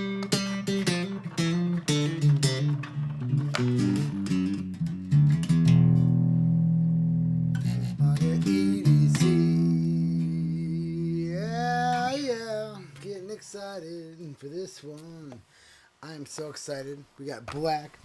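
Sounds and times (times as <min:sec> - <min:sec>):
guitar plucked notes and chords: 0:00.0 - 0:13.1.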